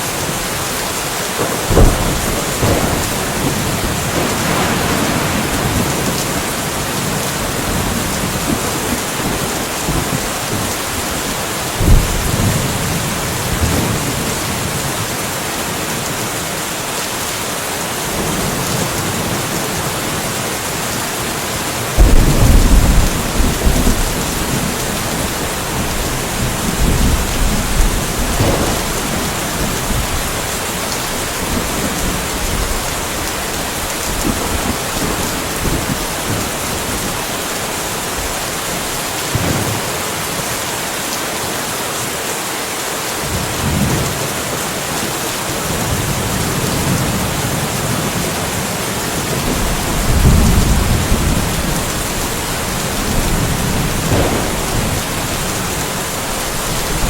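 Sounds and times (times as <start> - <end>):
rainfall hissing: 0.0 - 57.0
distant thunder rumbling: 1.4 - 14.8, 21.9 - 40.3, 45.6 - 57.0.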